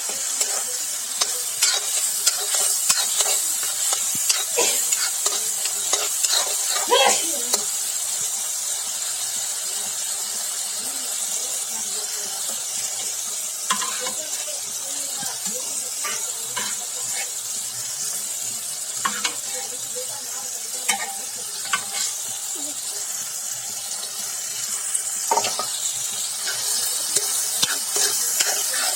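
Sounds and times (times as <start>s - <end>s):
food sizzling in a pan: 0.0s - 28.9s
spoon clicking against pan: 13.7s - 14.2s.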